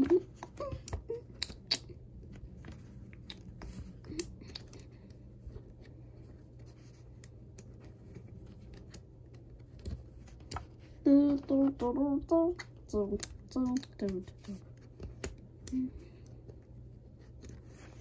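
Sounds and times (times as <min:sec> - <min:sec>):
low steady hum: 0:00.0 - 0:18.0
plastic building blocks clicking: 0:12.5 - 0:15.8.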